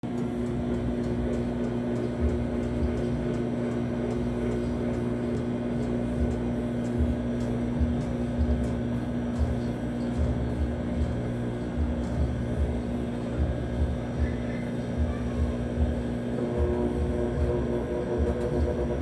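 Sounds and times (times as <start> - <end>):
washing machine motor hum: 0.0 - 19.0.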